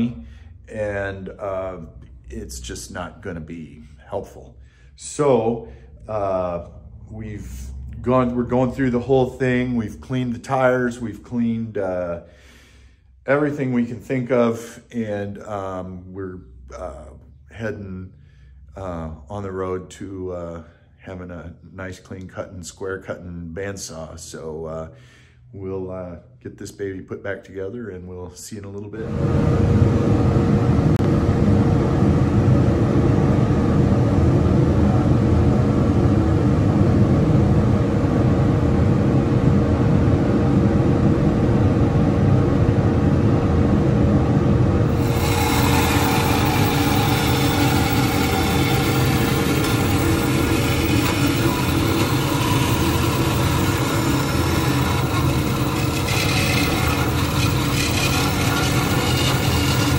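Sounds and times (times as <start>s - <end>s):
machine motor humming: 29.1s - 59.9s.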